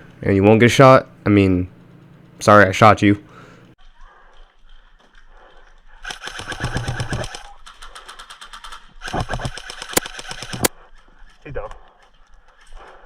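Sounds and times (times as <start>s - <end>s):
airsoft rifle full-auto bursts: 6.0s - 10.7s.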